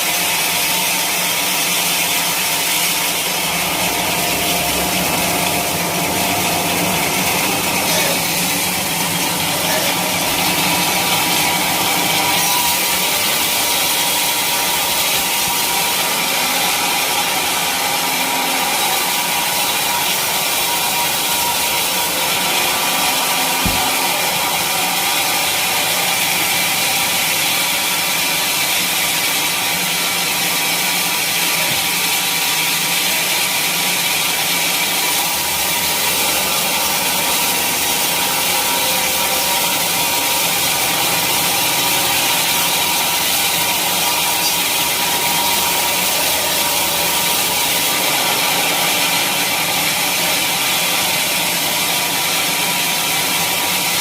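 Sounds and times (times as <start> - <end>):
saw cutting through log: 0.0 - 54.0.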